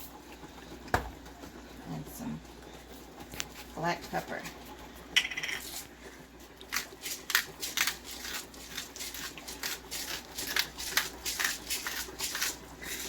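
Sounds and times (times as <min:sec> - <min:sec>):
pepper grinder scratching: 0:05.2 - 0:05.9, 0:06.7 - 0:13.0.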